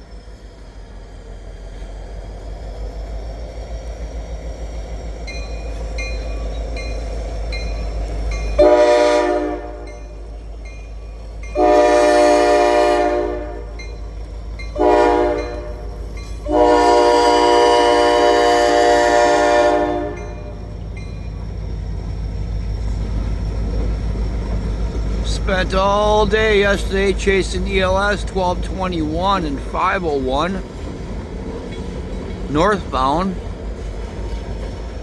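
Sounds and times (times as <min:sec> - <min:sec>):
train horn blasts: 0:08.6 - 0:10.1, 0:11.6 - 0:13.8, 0:14.8 - 0:20.7.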